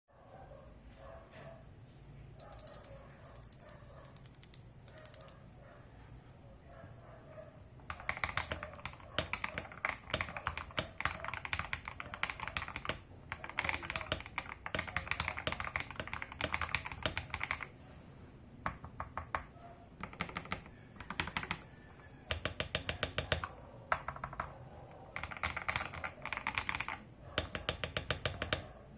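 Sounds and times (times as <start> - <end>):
mechanical keyboard typing: 2.4 - 5.4, 7.8 - 17.7, 18.6 - 24.5, 25.1 - 28.7.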